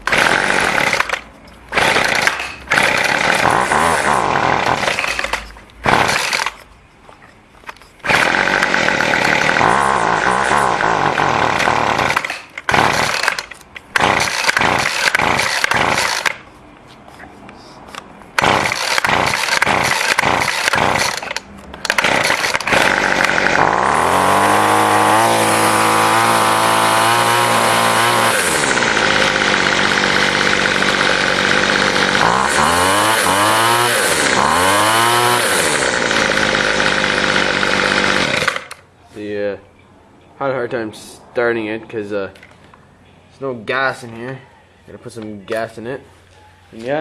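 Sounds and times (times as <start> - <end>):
string trimmer engine revving: 0.0 - 6.5, 8.0 - 16.4, 18.4 - 38.8
string trimmer engine sputtering: 0.0 - 6.5, 8.0 - 16.4, 18.4 - 38.8.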